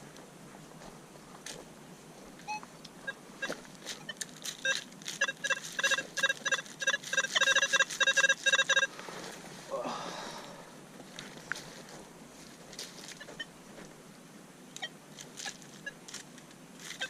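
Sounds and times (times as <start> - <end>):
metal detector beeps: 2.4 - 8.9.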